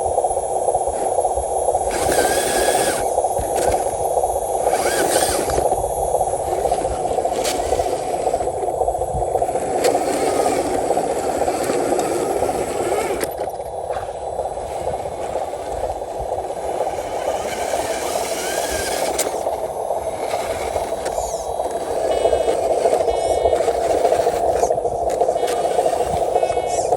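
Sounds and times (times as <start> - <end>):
small electric motors whirring: 0.4 - 26.9.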